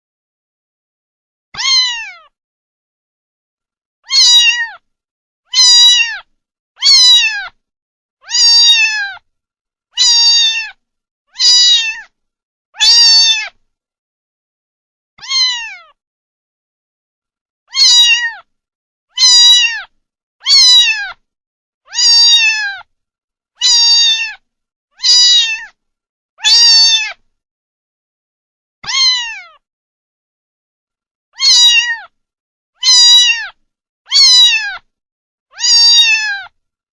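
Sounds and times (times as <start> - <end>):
cat meowing: 1.6 - 2.3, 4.0 - 4.8, 5.5 - 7.6, 8.2 - 9.2, 10.0 - 12.1, 12.8 - 13.6, 15.2 - 16.0, 17.7 - 18.5, 19.1 - 21.2, 21.9 - 22.9, 23.6 - 24.4, 25.0 - 25.8, 26.4 - 27.2, 28.8 - 29.6, 31.4 - 32.2, 32.8 - 34.9, 35.5 - 36.6.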